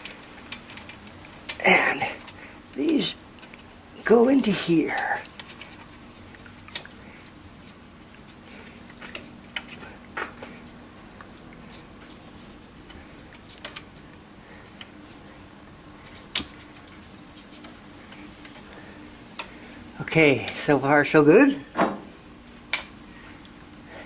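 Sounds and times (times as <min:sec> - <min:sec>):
small parts clicking and tapping: 0:00.0 - 0:01.6, 0:12.9 - 0:14.0, 0:22.7 - 0:23.6
faint steady hum: 0:00.0 - 0:24.0.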